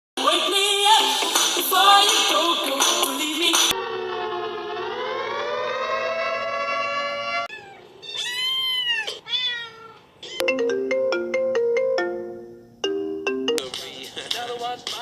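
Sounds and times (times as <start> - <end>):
cat meows: 7.5 - 10.4
ringtone melody: 10.4 - 14.2.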